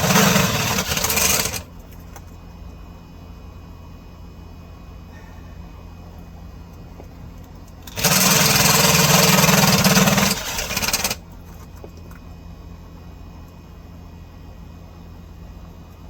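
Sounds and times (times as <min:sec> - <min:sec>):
power tool rattling: 0:00.0 - 0:01.7, 0:07.8 - 0:11.2
steady low hum: 0:00.0 - 0:16.0.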